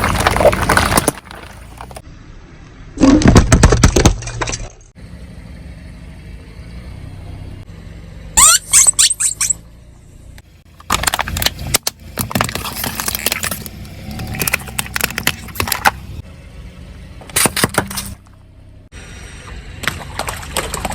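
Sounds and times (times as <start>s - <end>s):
objects crushed under tyres: 0.0s - 2.0s, 3.0s - 4.9s, 10.8s - 16.0s
car engine running: 0.0s - 2.9s, 4.8s - 20.9s.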